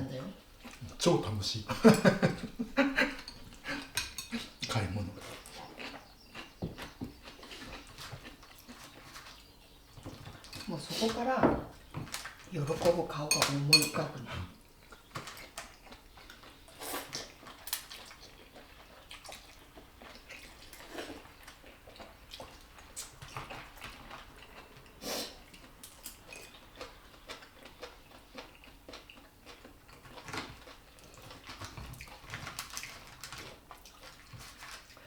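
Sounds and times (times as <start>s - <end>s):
utensils clicking against dishes: 3.0s - 4.5s, 12.6s - 14.1s.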